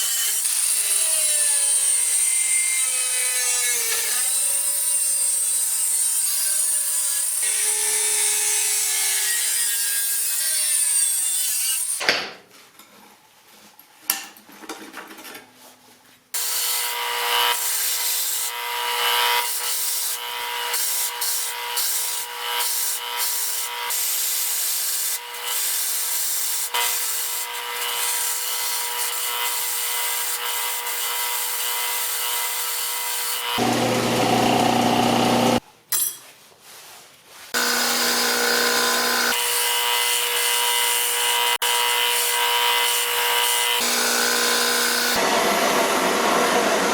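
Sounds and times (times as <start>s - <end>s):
rasping work: 0.0s - 12.0s, 16.4s - 36.4s, 37.5s - 45.2s
sawing strokes: 37.5s - 45.2s.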